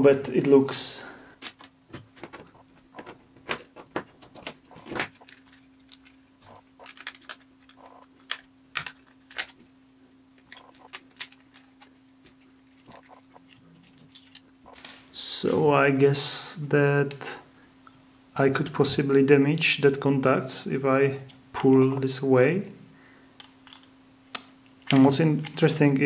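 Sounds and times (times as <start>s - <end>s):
steady low hum: 0.0s - 26.0s
battery pack clicks and rattles: 4.4s - 9.6s.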